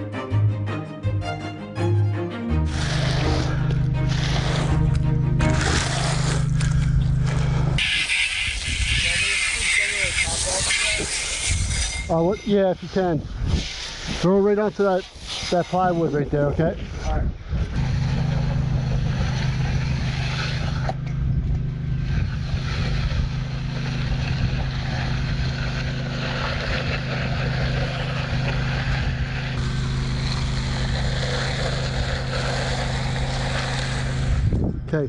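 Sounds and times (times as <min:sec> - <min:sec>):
engine running steadily: 0:02.6 - 0:08.0, 0:17.7 - 0:35.0.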